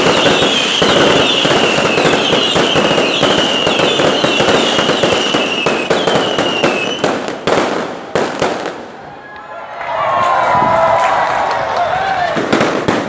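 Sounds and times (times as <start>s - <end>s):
falling firework whistle: 0.0s - 7.1s
fireworks crackling bangs: 0.0s - 9.1s, 10.2s - 13.0s.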